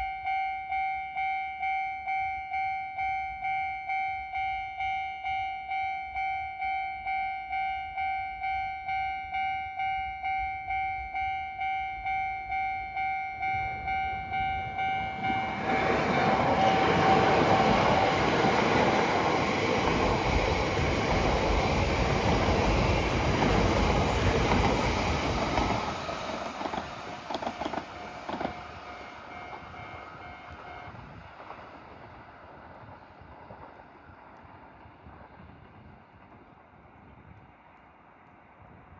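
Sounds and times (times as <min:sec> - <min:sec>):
level crossing bell ringing: 0:00.0 - 0:17.6
train wheels rushing on rails: 0:13.4 - 0:38.9
train wheel clicks: 0:13.5 - 0:36.6.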